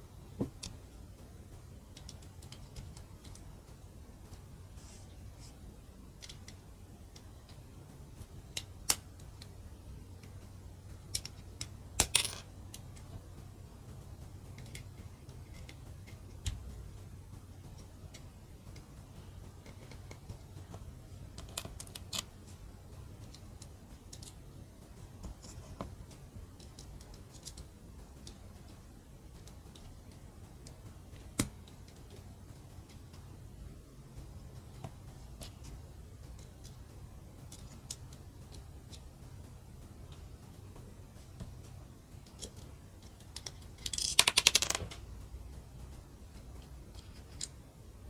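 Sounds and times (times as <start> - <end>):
plastic bricks clicking: 42.2 - 45.1.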